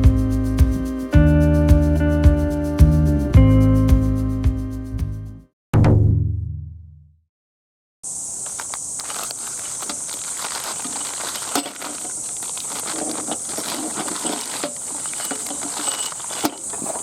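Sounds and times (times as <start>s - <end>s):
high insect chorus: 8.0s - 17.0s
small clicks and crackles: 8.4s - 17.0s.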